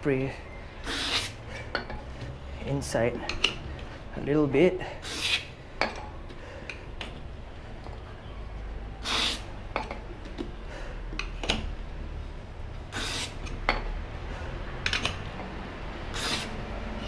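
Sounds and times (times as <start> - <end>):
handling clicks and knocks: 9.7 - 11.7, 14.8 - 15.5
aerosol can spraying: 16.1 - 16.6.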